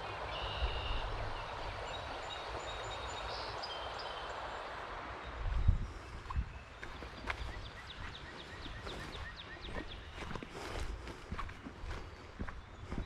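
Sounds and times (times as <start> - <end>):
small birds chirping: 0.0 - 13.0
wind rumble on microphone: 5.0 - 13.0.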